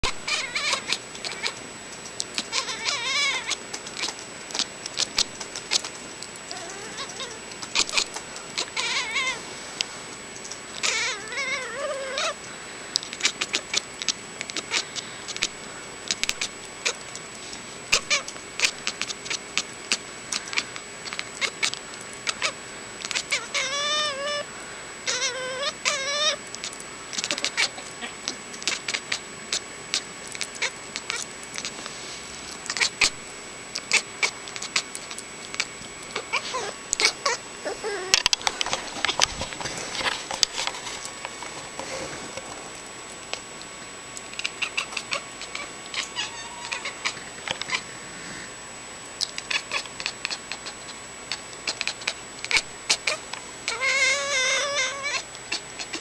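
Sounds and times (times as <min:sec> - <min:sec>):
cat trilling: 0:00.0 - 0:01.6, 0:02.4 - 0:04.2, 0:06.5 - 0:09.4, 0:10.8 - 0:12.4, 0:21.4 - 0:26.4, 0:33.8 - 0:38.3, 0:44.4 - 0:47.9, 0:51.7 - 0:56.0.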